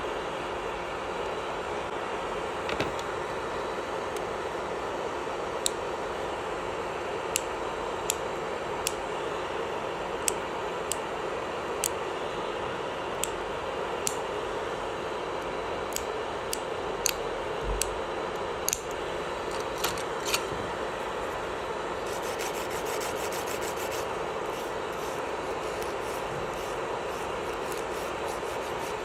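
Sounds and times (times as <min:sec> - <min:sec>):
electric nail drill running: 0:22.0 - 0:29.0.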